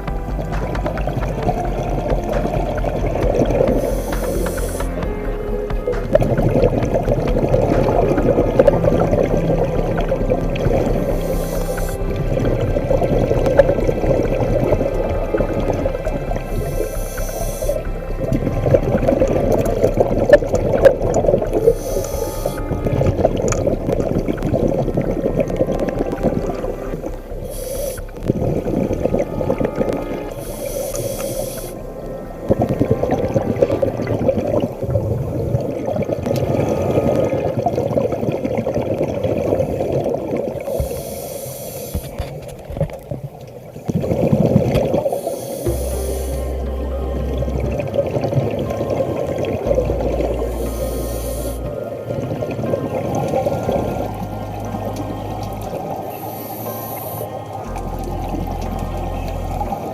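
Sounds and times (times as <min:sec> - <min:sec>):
gurgle of exhaled bubbles: 0:00.0 - 0:59.9
diver inhaling through regulator: 0:03.6 - 0:05.0, 0:11.0 - 0:12.2, 0:16.5 - 0:18.0, 0:21.6 - 0:22.8, 0:27.4 - 0:28.3, 0:30.4 - 0:31.8, 0:40.7 - 0:42.3, 0:45.1 - 0:46.6, 0:50.5 - 0:51.7, 0:55.4 - 0:57.4.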